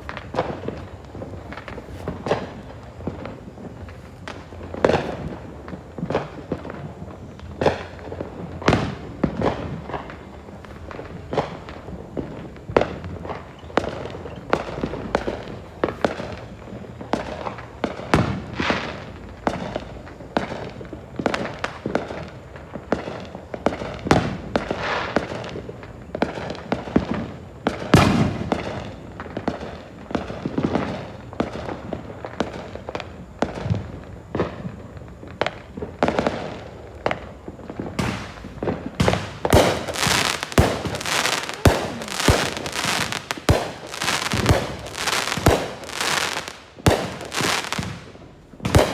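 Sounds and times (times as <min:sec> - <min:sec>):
fireworks crackle: 0:00.0 - 0:48.9
fireworks shells booming: 0:00.0 - 0:48.9
firecracker bangs: 0:27.8 - 0:28.9, 0:37.8 - 0:48.9.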